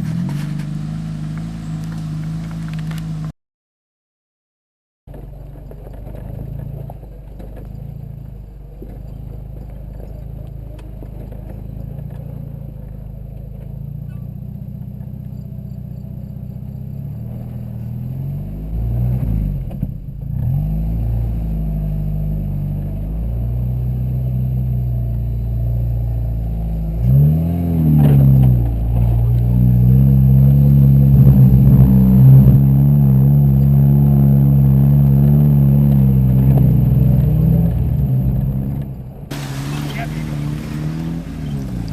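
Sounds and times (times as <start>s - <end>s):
car engine revving inside cab: 15.7s - 41.9s.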